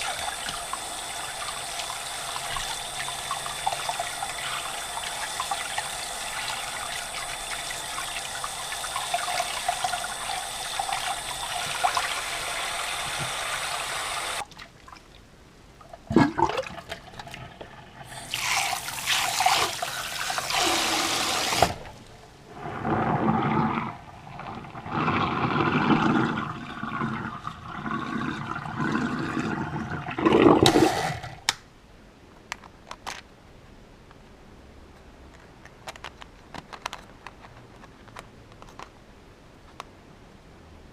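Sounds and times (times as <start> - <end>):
tap water running: 0.0 - 15.0, 16.0 - 31.5.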